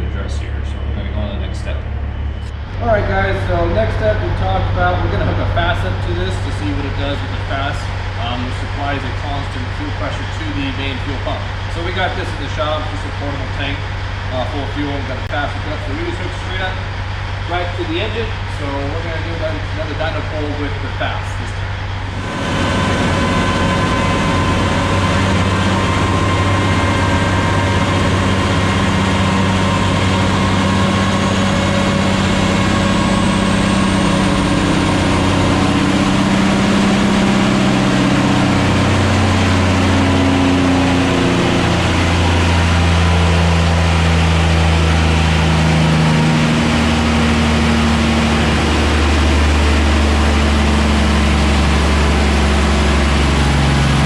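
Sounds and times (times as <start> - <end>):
faint high whine: 0.0 - 41.2
diesel engine running under load: 0.0 - 54.0.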